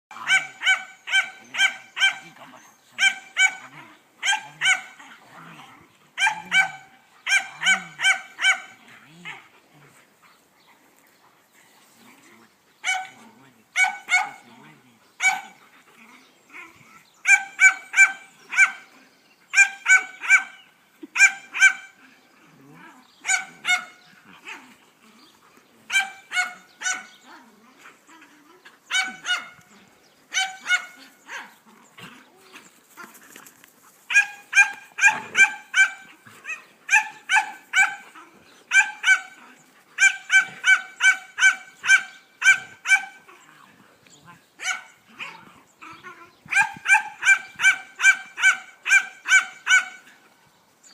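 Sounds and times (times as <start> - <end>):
dog yapping: 28.9 - 29.6, 30.3 - 31.5, 34.1 - 38.0, 40.0 - 43.2, 44.6 - 50.0.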